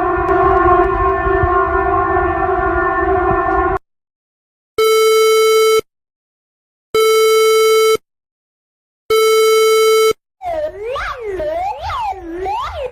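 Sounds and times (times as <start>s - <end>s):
buzzy electronic tones: 0.0s - 3.8s
wavering swooping alarm tone: 0.0s - 3.8s.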